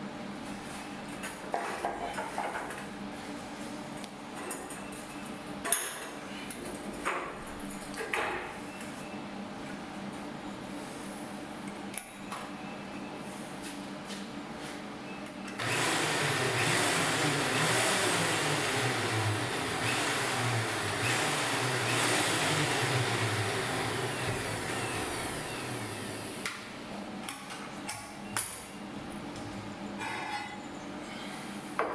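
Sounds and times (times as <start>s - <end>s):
steady machine hum: 15.5s - 27.2s.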